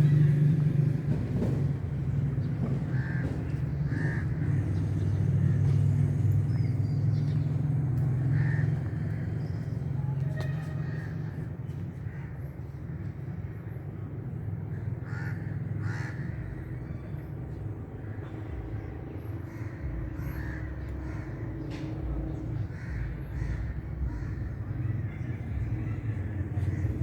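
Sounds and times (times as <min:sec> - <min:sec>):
steady low rumble: 0:00.0 - 0:27.0
crows cawing: 0:02.9 - 0:04.9, 0:08.2 - 0:09.6, 0:14.8 - 0:16.7, 0:19.5 - 0:27.0.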